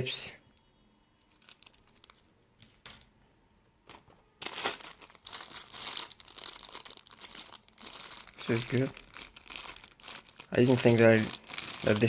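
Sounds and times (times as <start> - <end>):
plastic packaging crinkling: 1.3 - 2.3, 4.4 - 12.0.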